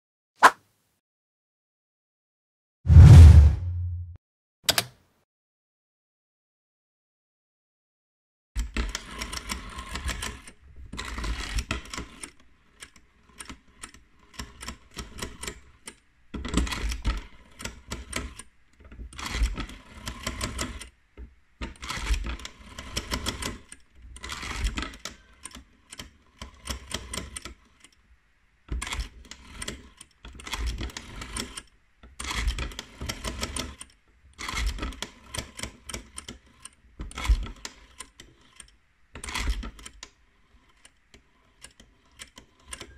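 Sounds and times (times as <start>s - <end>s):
rotary telephone dial clicking: 28.9s - 42.9s.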